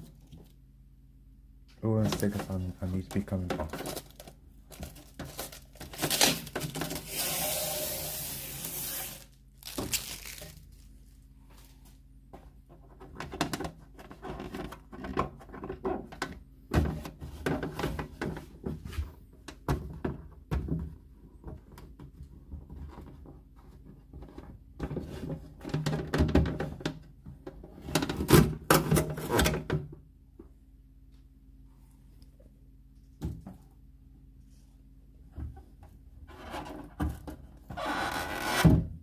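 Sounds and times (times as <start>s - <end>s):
peeling protective film: 5.3s - 10.9s.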